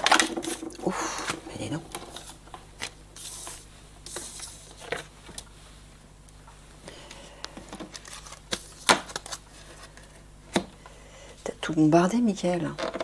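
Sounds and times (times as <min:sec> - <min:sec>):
cards being shuffled: 0:00.0 - 0:05.5, 0:07.1 - 0:10.7.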